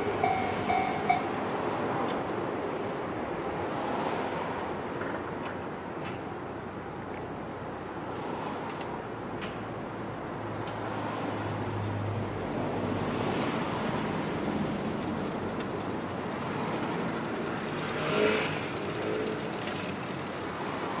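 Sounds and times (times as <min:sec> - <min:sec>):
motor vehicle noise: 0:00.0 - 0:21.0
vehicle passing: 0:10.8 - 0:21.0.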